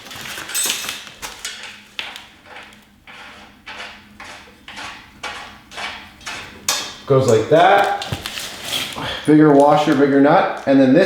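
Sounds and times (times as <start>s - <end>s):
metal washers clinking and scraping: 0.0s - 1.8s.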